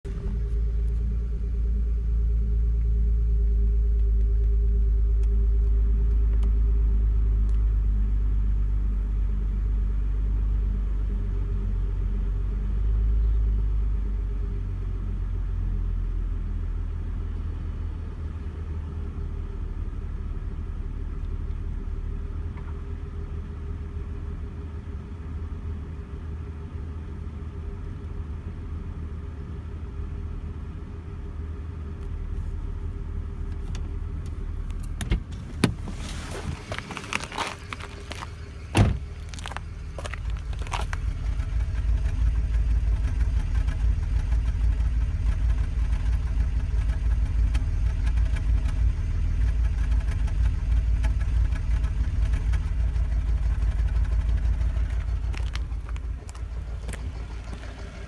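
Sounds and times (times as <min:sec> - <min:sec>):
car engine idling with misfire: 0:00.0 - 0:58.0.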